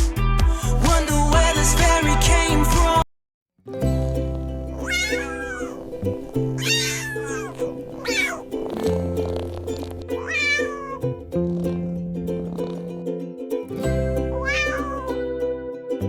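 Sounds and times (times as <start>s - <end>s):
background music with chords: 0.0s - 3.0s
cat meowing: 4.8s - 5.9s, 6.6s - 8.5s, 10.2s - 11.1s, 14.4s - 15.2s.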